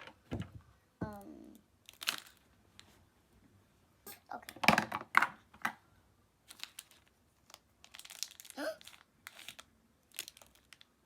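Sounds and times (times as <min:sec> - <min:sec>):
plastic packaging crinkling: 0:01.8 - 0:02.4, 0:06.4 - 0:10.9.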